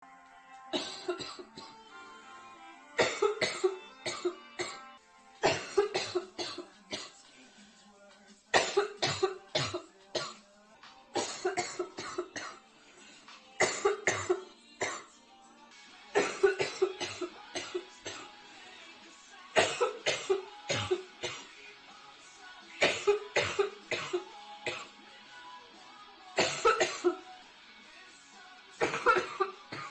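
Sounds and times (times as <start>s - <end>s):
girl coughing in fits: 0.8s - 1.8s, 3.0s - 4.8s, 5.4s - 7.1s, 8.5s - 10.4s, 11.2s - 12.6s, 13.6s - 15.1s, 16.2s - 18.2s, 19.6s - 21.5s, 22.8s - 24.9s, 26.4s - 27.2s, 28.8s - 29.9s.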